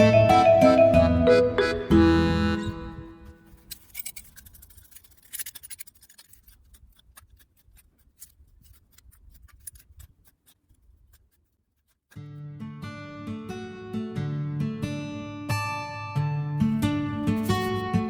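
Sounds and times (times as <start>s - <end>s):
faint clicks and scratching: 3.4s - 12.4s, 17.3s - 18.0s.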